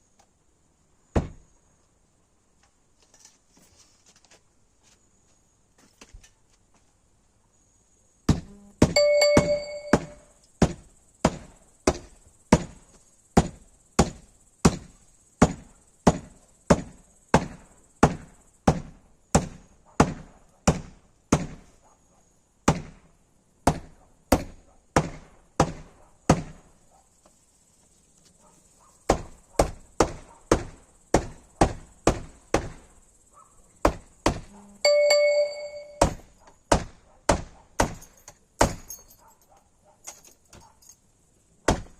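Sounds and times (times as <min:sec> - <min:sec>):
brief ringing note: 0:09.0 - 0:10.2, 0:34.9 - 0:36.0.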